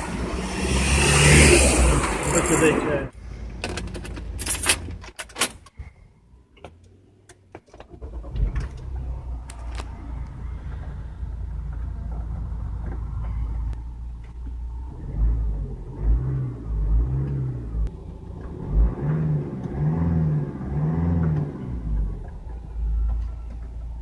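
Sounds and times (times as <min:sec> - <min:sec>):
car engine idling: 0:00.0 - 0:01.1, 0:08.0 - 0:16.0.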